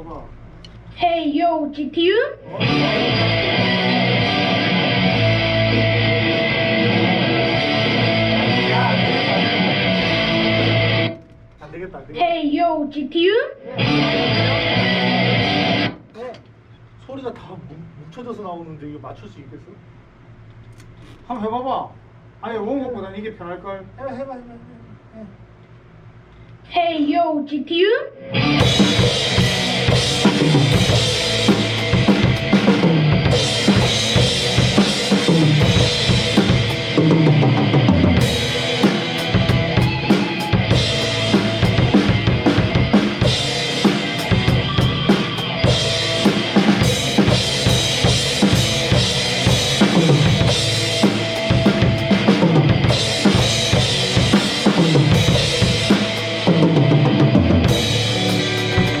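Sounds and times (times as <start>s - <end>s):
backing music track: 2.5s - 11.2s, 13.7s - 16.0s, 28.3s - 59.0s
drum kit playing rock groove: 2.6s - 11.2s, 28.4s - 59.0s.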